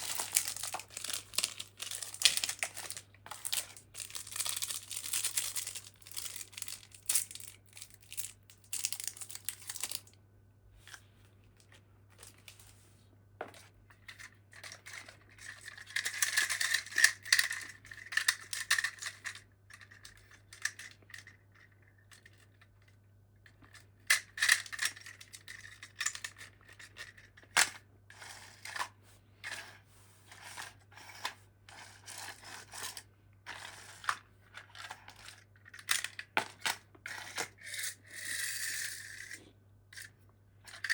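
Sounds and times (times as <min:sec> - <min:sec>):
packaging crinkling and tearing: 0:00.0 - 0:10.1.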